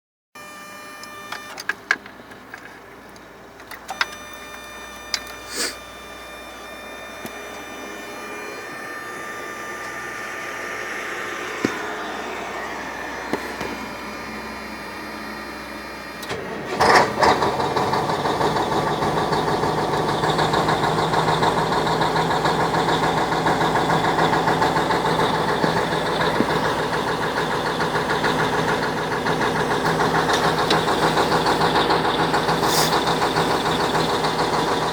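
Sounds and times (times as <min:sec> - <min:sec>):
diesel engine idling: 0:00.4 - 0:34.9
engine starter clicks: 0:00.9 - 0:10.4, 0:11.4 - 0:34.9
rising hum: 0:04.0 - 0:18.7.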